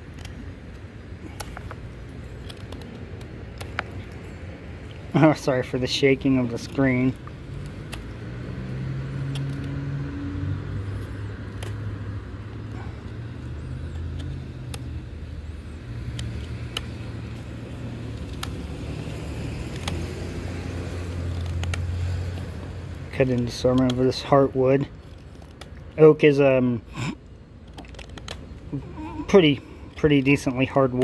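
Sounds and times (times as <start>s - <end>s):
car engines running: 0.0s - 31.0s.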